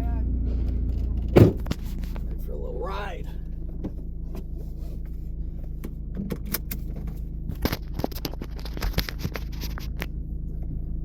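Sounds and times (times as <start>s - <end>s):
car engine drone: 0.0s - 11.0s
sharp clicks and rattles: 5.8s - 10.2s.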